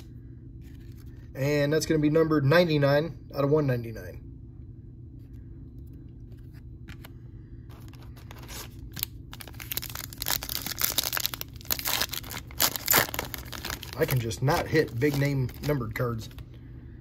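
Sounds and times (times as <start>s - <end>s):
low steady hum: 0.0s - 17.0s
foil wrapper tearing and crinkling: 7.9s - 16.4s.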